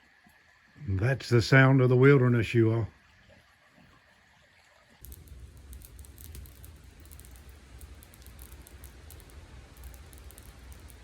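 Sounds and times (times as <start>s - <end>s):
light pattering ticks: 5.0s - 11.0s
low steady rumble: 5.0s - 11.0s.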